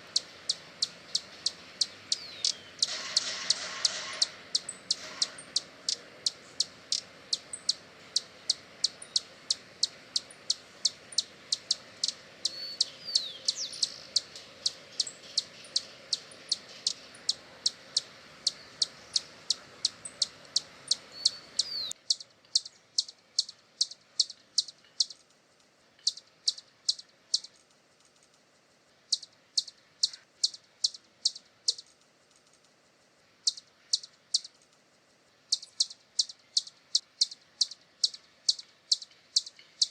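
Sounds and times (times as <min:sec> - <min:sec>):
hummingbird chip notes: 0:00.0 - 0:25.2, 0:35.4 - 0:39.9.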